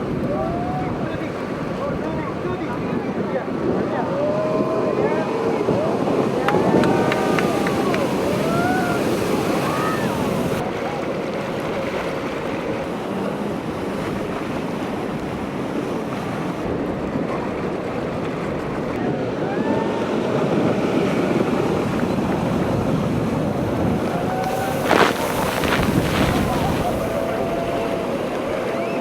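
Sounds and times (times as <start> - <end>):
ocean surf: 0.0 - 29.0
wind buffeting microphone: 0.0 - 29.0
wind rushing: 3.7 - 10.6, 19.1 - 29.0
faint sliding calls: 23.6 - 28.4.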